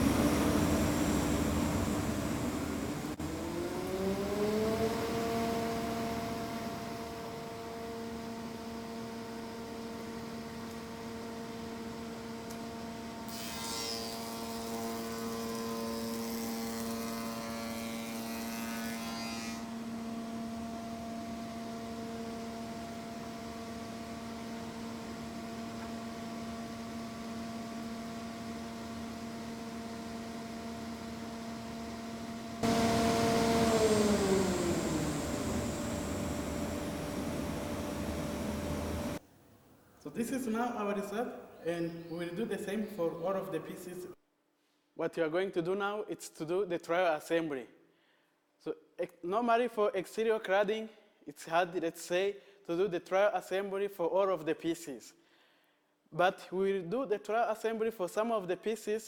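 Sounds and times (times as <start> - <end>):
electric motor humming: 0.0 - 7.3, 32.6 - 39.2
woodworking machine cutting: 0.0 - 8.2, 13.2 - 20.1, 32.6 - 39.2.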